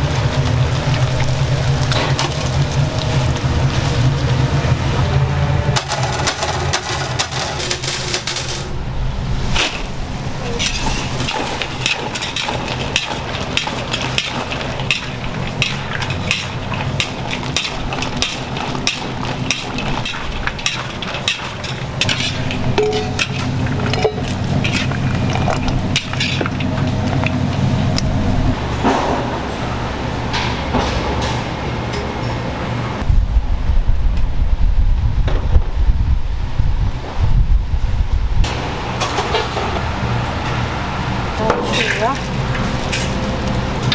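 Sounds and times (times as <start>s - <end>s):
oil frying hiss: 0.0s - 5.0s, 9.2s - 28.6s
metal utensils and pans clicking: 5.8s - 8.8s, 10.5s - 28.1s, 41.4s - 43.9s.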